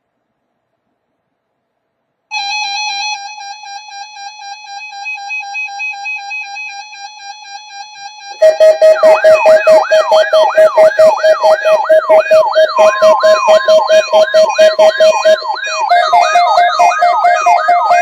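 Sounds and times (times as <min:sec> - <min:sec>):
sweeping electronic siren: 0:02.3 - 0:18.0
pulsing electronic beep: 0:08.4 - 0:18.0.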